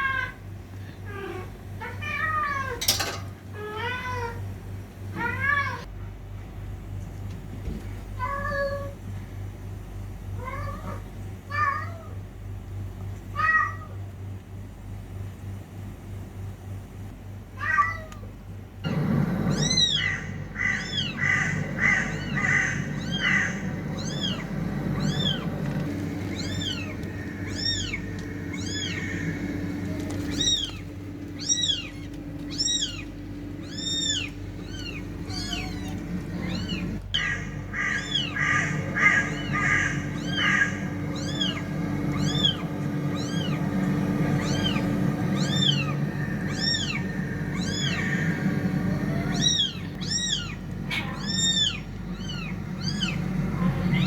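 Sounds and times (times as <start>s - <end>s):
steady low hum: 0.0s - 54.0s
cat meowing: 1.1s - 3.0s, 17.6s - 18.3s, 19.5s - 43.6s, 44.3s - 48.4s, 49.1s - 54.0s.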